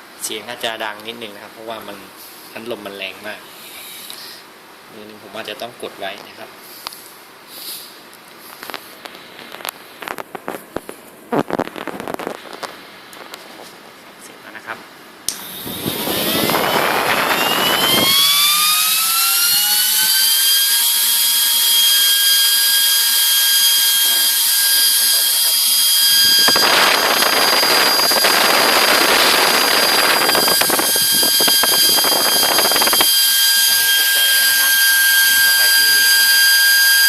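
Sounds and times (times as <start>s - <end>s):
fan high-pitched whine: 0.0s - 37.0s
air rushing: 15.4s - 18.4s.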